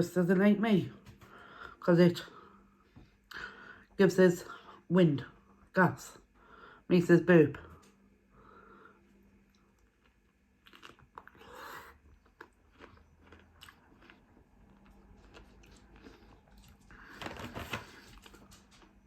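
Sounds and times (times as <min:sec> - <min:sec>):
person chewing crunchy cucumber: 0:09.4 - 0:17.1.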